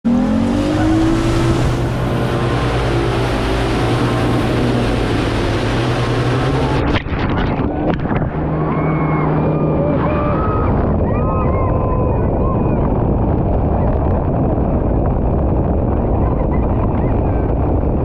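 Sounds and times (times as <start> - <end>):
watercraft engine running: 0.0 - 18.0
wind on microphone: 0.1 - 18.0.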